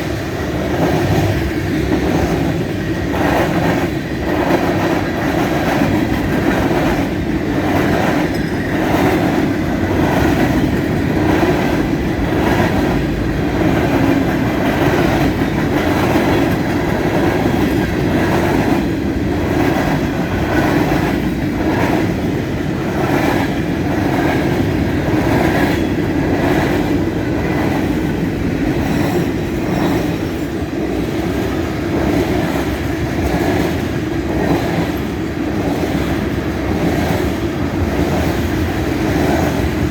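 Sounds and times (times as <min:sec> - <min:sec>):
freight train rumbling past: 0:00.0 - 0:39.9
wheels clacking over rail joints: 0:00.0 - 0:39.9.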